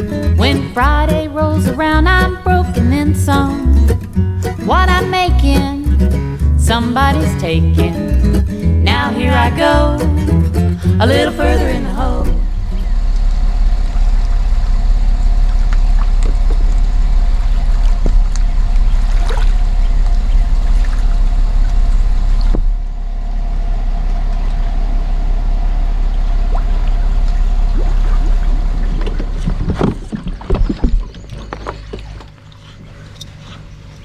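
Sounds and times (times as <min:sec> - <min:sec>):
water sloshing around a kayak: 0:27.7 - 0:33.9.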